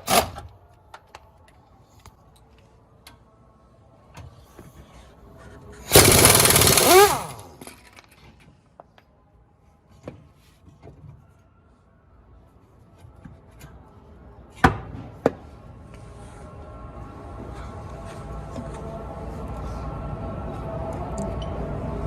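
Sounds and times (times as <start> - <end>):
impact wrench hammering: 5.9 - 7.6.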